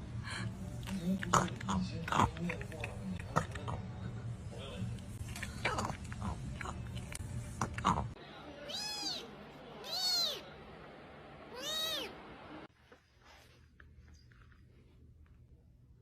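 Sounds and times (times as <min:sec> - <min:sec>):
cat meowing: 0:08.6 - 0:10.5, 0:11.5 - 0:12.2.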